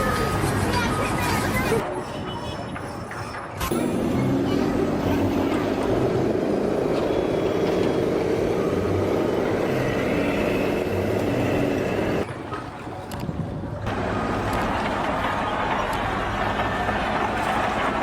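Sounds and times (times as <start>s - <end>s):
heavy vehicle engine rumbling: 3.4s - 12.3s, 13.8s - 18.0s.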